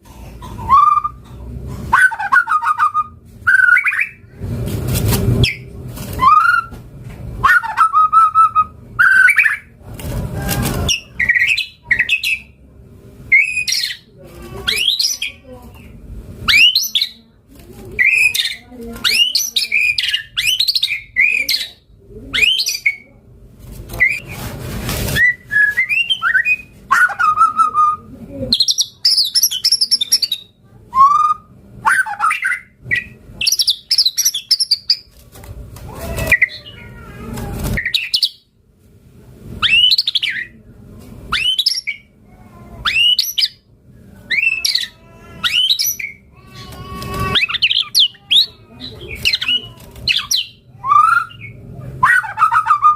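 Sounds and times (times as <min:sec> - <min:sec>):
bird singing whistled phrases: 0:25.2 - 0:28.0, 0:41.3 - 0:42.1, 0:42.8 - 0:43.6, 0:49.2 - 0:52.9.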